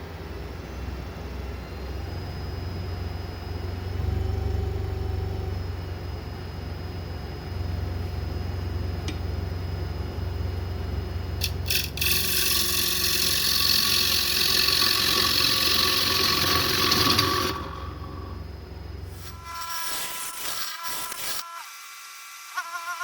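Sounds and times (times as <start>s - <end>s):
turning tool scraping wood: 11.4s - 18.4s
wood lathe humming: 11.4s - 20.3s.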